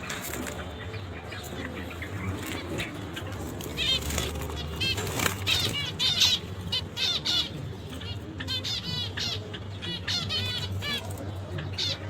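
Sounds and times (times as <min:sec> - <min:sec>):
budgerigars chattering: 0:00.0 - 0:12.0.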